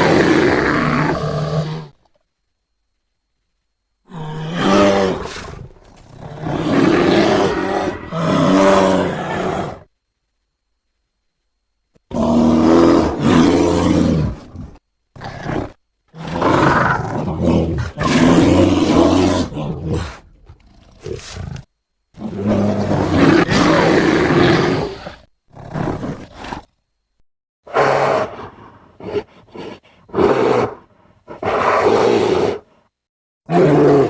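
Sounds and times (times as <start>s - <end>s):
dragon roars: 0.0s - 1.9s, 4.1s - 9.9s, 33.5s - 34.0s.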